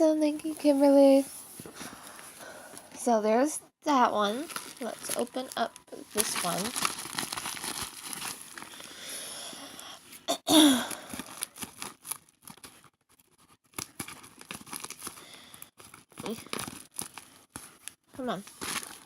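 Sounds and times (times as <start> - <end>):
package wrapping crinkling and tearing: 4.3 - 9.4, 10.2 - 19.0.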